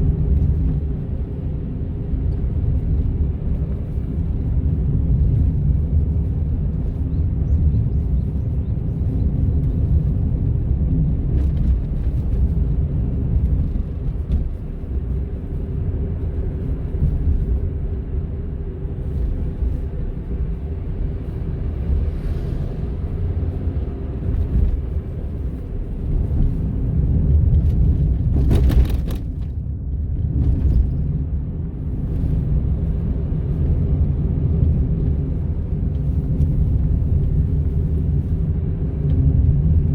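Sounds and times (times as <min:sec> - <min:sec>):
car road and engine rumble: 0:00.0 - 0:39.9.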